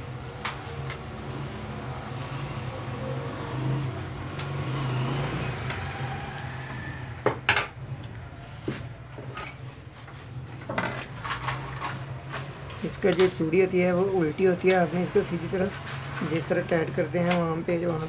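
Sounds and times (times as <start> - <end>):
metal tools clinking and tapping: 9.1 - 12.5.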